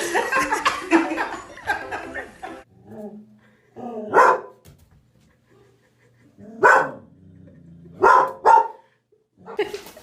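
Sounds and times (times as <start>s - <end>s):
dog barking: 4.0s - 4.6s, 6.6s - 7.1s, 8.0s - 8.9s.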